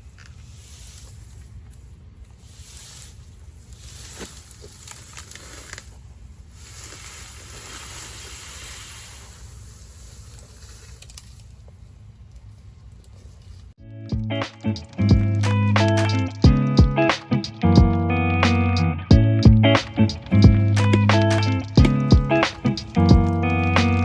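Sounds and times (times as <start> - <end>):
hiss: 2.3 - 11.4.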